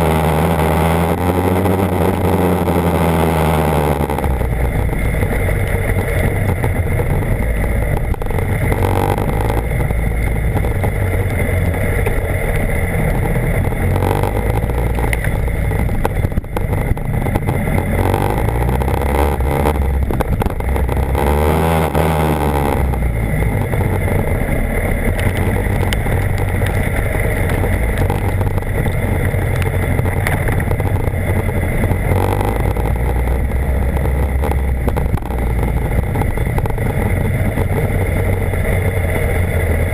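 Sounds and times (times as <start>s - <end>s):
motorcycle engine running: 0.0s - 39.9s
heavy wind noise: 1.1s - 39.9s.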